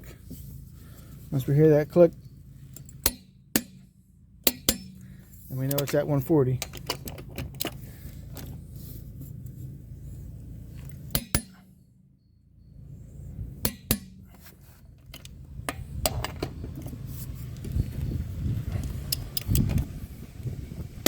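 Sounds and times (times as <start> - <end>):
wrench and socket clinking: 4.4 - 7.8, 18.8 - 19.8
torque wrench clicking: 18.8 - 19.8.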